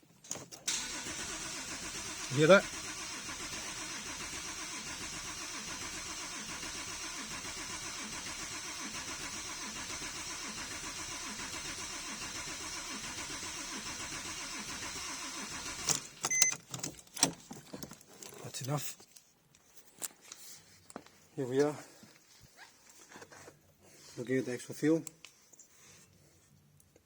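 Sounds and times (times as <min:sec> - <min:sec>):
engine cranking without starting: 0:00.6 - 0:17.5.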